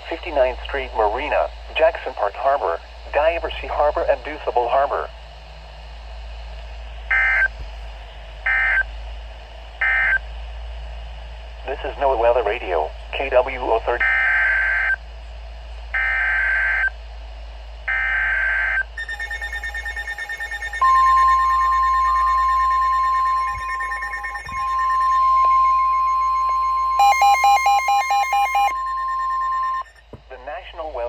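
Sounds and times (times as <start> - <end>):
radio receivers beeping: 0.0 - 5.1, 7.1 - 7.6, 11.7 - 15.0, 17.9 - 31.0
steady warning alert tone: 0.0 - 5.1, 11.7 - 15.0, 17.9 - 31.0
rapid pulsing alarm: 0.0 - 31.0
buzzy digital header bursts: 17.9 - 30.0.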